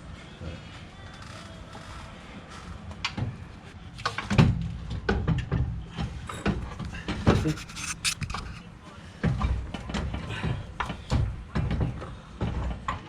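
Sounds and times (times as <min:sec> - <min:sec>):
floor jack being pumped: 0:07.0 - 0:08.6.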